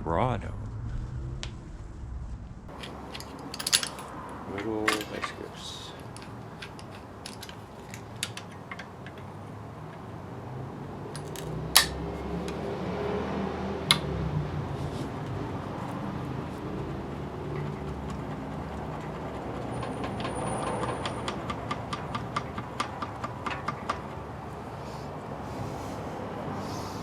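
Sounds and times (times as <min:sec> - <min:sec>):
metal tool clicks: 0:02.7 - 0:10.1, 0:11.2 - 0:12.7, 0:13.9 - 0:14.1.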